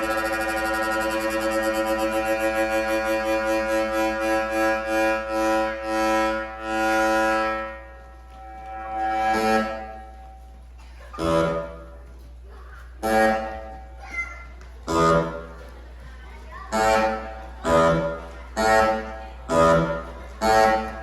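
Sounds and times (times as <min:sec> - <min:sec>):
short separate music chords: 0:00.0 - 0:10.5.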